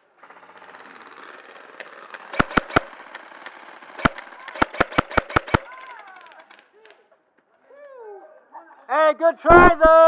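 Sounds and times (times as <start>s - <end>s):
steady rushing background noise: 2.3s - 5.6s
airsoft gun shots: 2.3s - 6.0s, 9.5s - 10.0s.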